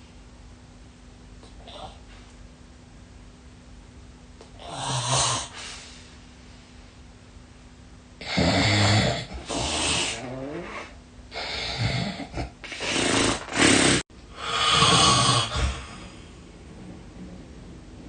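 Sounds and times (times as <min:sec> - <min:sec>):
person snoring heavily: 0:04.6 - 0:05.7, 0:08.2 - 0:16.2.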